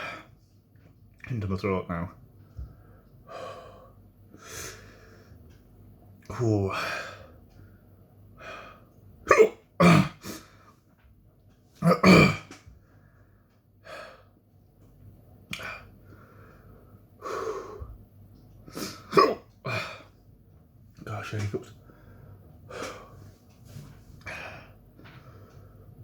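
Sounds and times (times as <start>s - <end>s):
breathing: 2.4s - 5.4s, 12.8s - 14.3s, 16.0s - 17.9s, 21.8s - 26.0s
man hiccuping: 9.3s - 10.2s, 11.8s - 12.5s, 19.1s - 20.0s.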